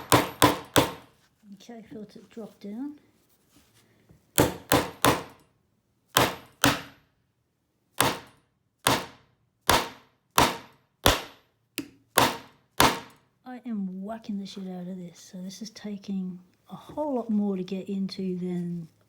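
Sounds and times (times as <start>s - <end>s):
hammer striking plastic padlock: 0.0s - 1.1s, 4.4s - 5.4s, 6.1s - 7.0s, 8.0s - 13.2s.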